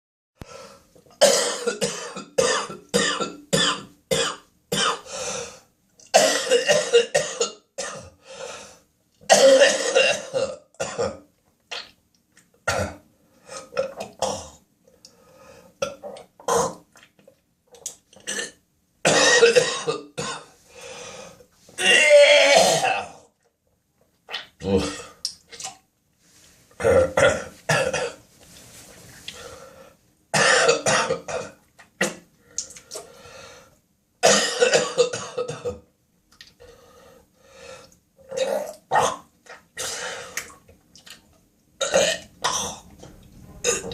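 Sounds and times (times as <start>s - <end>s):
person coughing harshly: 1.2s - 5.1s, 6.1s - 8.1s, 9.3s - 11.2s, 18.3s - 20.5s, 21.8s - 23.2s, 26.8s - 28.2s, 30.4s - 32.2s, 34.2s - 35.8s, 43.6s - 43.9s.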